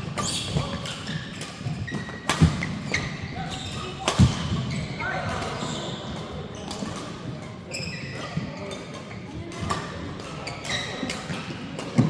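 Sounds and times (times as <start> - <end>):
shoe squeaks on court floor: 0.2 - 2.3, 2.9 - 6.7, 7.7 - 8.5, 10.4 - 11.1.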